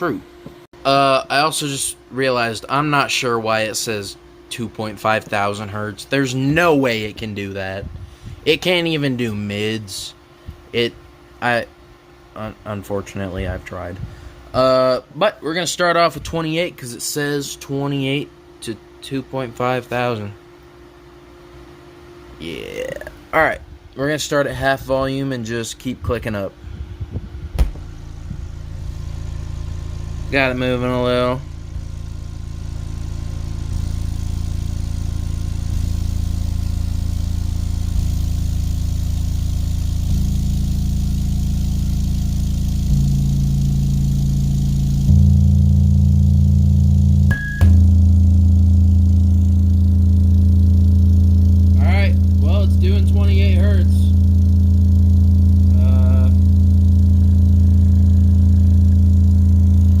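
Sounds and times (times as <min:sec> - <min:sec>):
subwoofer deep test tone: 0:22.5 - 1:00.0.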